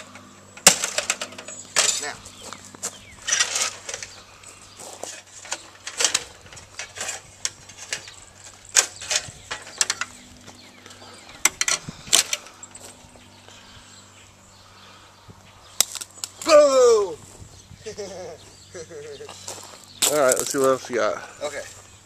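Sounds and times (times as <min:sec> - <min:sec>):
metal parts clanking and creaking: 0:00.0 - 0:13.0, 0:20.0 - 0:20.8.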